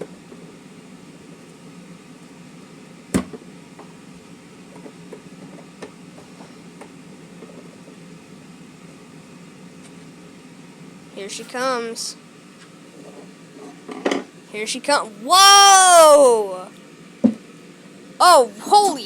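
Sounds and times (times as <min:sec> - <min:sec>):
room heater humming: 0:00.0 - 0:19.0.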